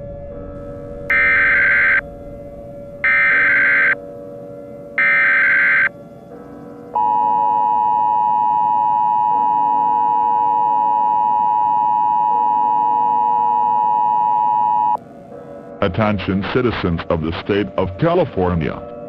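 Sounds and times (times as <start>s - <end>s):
two-tone alert signal: 1.1s - 2.0s, 3.0s - 4.0s, 5.0s - 5.9s.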